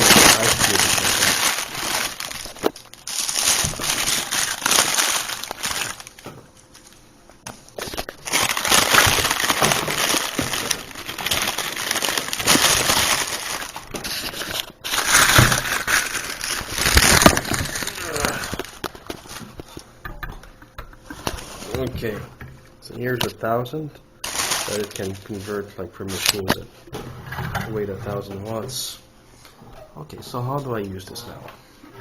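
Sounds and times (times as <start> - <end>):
packaging crinkling and rustling: 0.0 - 19.8, 24.2 - 26.6.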